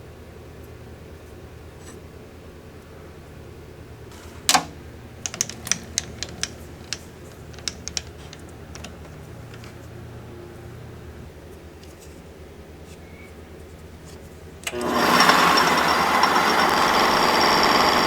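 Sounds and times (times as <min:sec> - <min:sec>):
light metallic clicks: 0:04.4 - 0:09.8.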